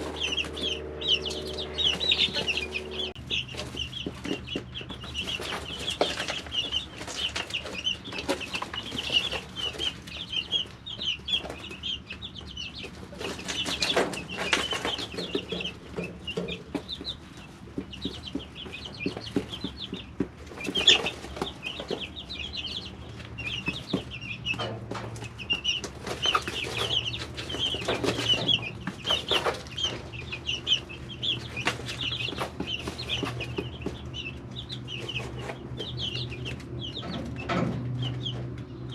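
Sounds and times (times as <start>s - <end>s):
faint low hum: 0.0s - 4.6s
chicks peeping: 0.0s - 38.9s.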